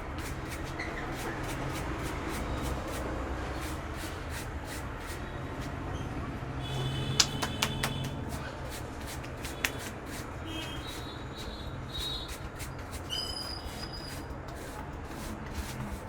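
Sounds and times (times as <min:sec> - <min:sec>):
hands patting and rubbing head: 0:06.8 - 0:11.6
sharp cracks: 0:07.2 - 0:08.2.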